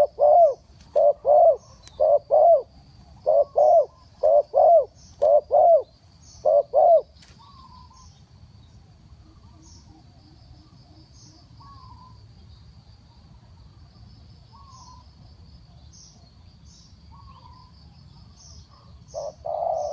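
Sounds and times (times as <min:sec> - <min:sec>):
dove cooing: 0:00.0 - 0:08.0, 0:18.7 - 0:19.9.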